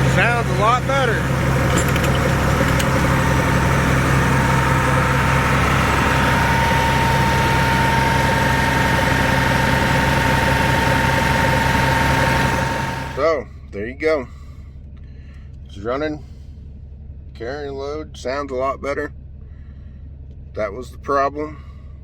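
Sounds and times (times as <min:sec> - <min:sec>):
gas engine running under load: 0:00.0 - 0:13.3
thin steady whine: 0:00.0 - 0:13.4.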